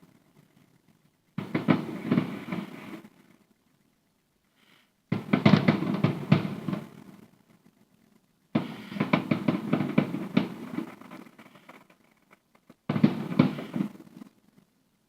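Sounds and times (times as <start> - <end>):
fireworks bangs and crackles: 1.4 - 3.2, 5.1 - 7.6, 8.6 - 14.6.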